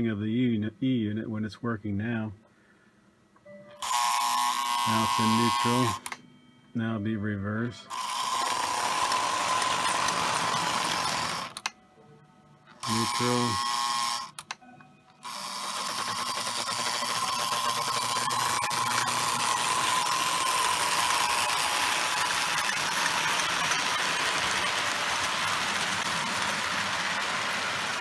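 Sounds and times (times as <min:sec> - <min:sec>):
toy train motor whirring: 0:03.8 - 0:06.2, 0:07.9 - 0:11.7, 0:12.7 - 0:14.6, 0:15.2 - 0:28.0.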